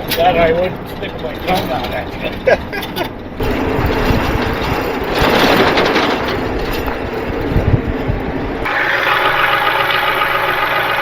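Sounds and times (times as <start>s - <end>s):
truck bumps and jolts: 0.0s - 8.7s.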